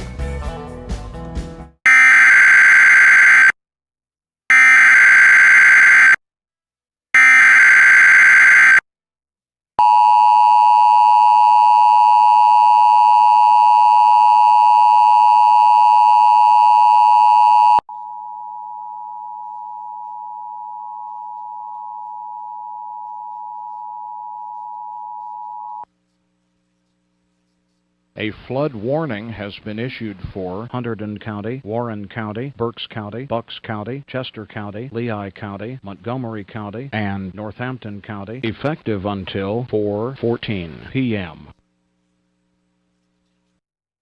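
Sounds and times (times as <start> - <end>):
single steady tone: 9.8 - 25.9.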